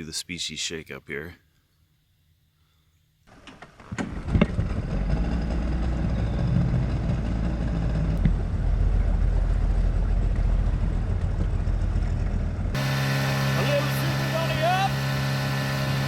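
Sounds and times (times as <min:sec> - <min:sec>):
outboard motor running: 0:03.3 - 0:16.0.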